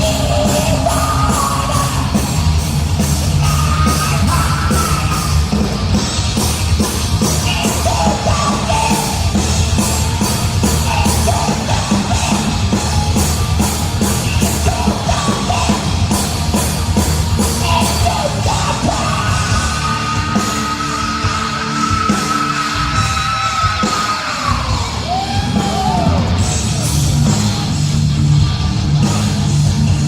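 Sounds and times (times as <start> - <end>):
heavy metal band playing: 0.0 - 30.0
shouted vocals: 17.6 - 26.9.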